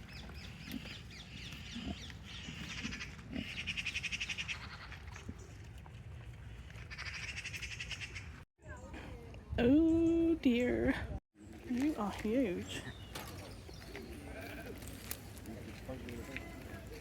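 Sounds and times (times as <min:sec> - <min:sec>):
birds chattering: 0:00.0 - 0:05.6, 0:11.4 - 0:17.0.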